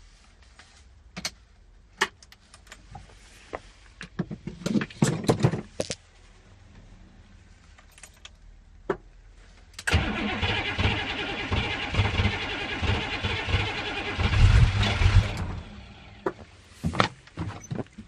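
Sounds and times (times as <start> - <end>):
diesel engine cranking: 9.8 - 16.2.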